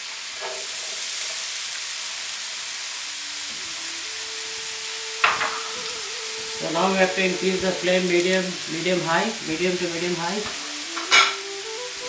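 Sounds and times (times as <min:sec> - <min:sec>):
onion sizzling in hot oil: 0:00.0 - 0:12.0.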